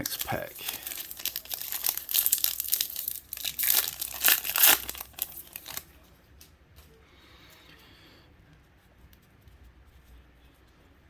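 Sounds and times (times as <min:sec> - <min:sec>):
wrapper tearing and crinkling: 0:00.0 - 0:05.9.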